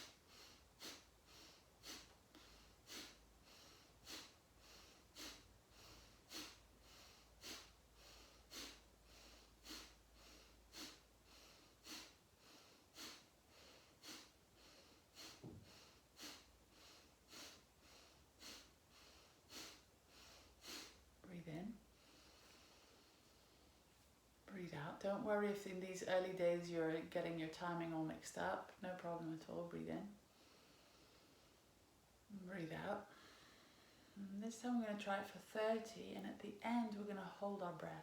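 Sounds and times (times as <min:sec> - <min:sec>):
woman's forceful nasal exhalations: 0:00.0 - 0:17.7
woman breathing in: 0:21.9 - 0:23.9, 0:33.1 - 0:34.3.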